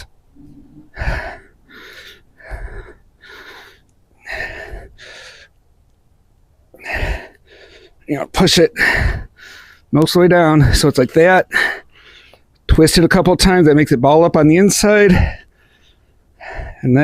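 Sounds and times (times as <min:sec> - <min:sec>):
man gasping breaths: 0:00.0 - 0:05.6, 0:06.7 - 0:08.1, 0:08.7 - 0:09.9, 0:11.5 - 0:12.5, 0:15.1 - 0:16.8.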